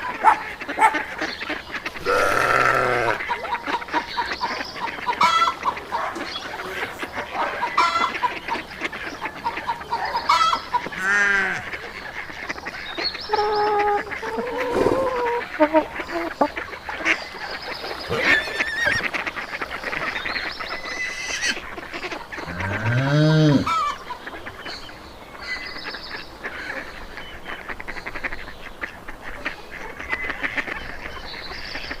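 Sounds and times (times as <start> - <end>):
geese honking: 0.0 - 24.8, 25.4 - 32.0
ducks quacking: 0.0 - 32.0
low drawn-out animal call: 2.0 - 3.3, 13.3 - 16.4, 22.4 - 24.0.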